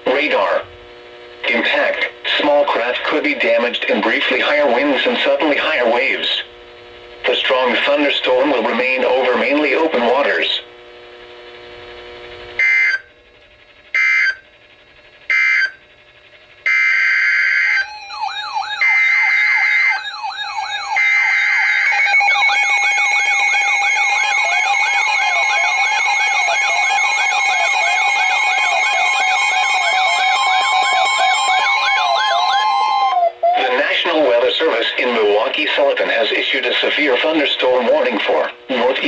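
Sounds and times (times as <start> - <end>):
long steady alert tone: 12.6 - 13.0, 14.0 - 14.4, 15.3 - 15.8, 16.7 - 34.6
siren-like sweeping tone: 16.7 - 34.0
screeching data bursts: 16.7 - 37.8.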